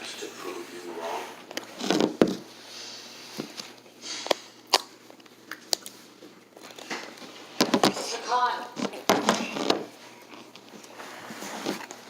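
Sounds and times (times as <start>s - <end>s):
breathy sniffs: 2.6s - 3.4s, 4.0s - 4.4s.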